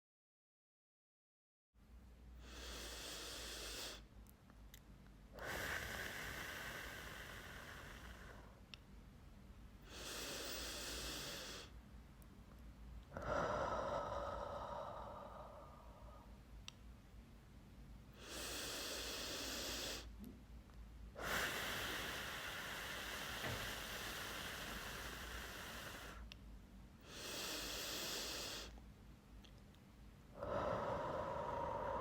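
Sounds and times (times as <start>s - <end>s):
person breathing deeply: 2.4s - 4.1s, 5.4s - 8.7s, 9.8s - 11.8s, 13.1s - 16.4s, 18.1s - 20.2s, 21.2s - 26.3s, 27.0s - 28.8s, 30.3s - 32.0s.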